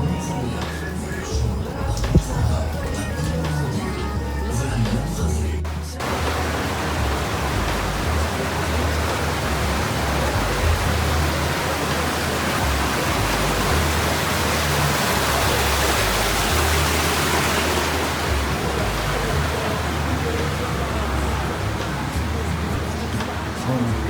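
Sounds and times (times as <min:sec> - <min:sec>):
low bass music: 0:00.0 - 0:24.0
loud rushing noise: 0:05.7 - 0:24.0.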